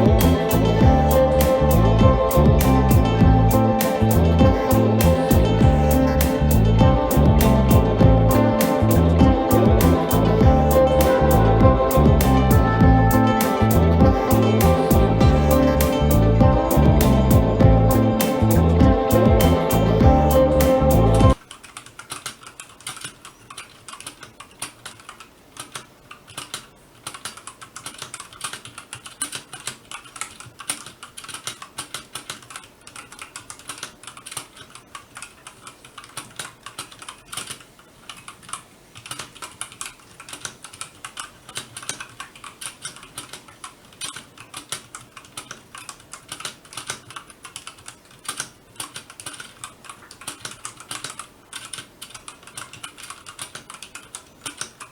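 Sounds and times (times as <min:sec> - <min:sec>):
mechanical keyboard typing: 0:21.3 - 0:54.9.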